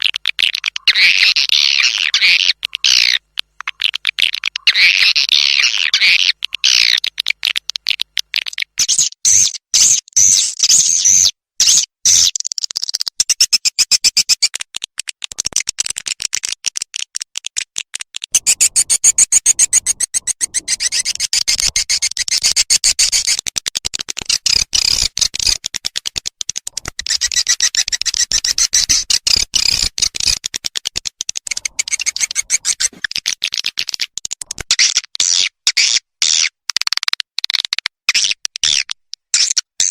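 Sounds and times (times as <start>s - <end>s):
high-pitched bird twittering: 18.3s - 23.4s, 27.0s - 30.4s, 31.5s - 33.2s.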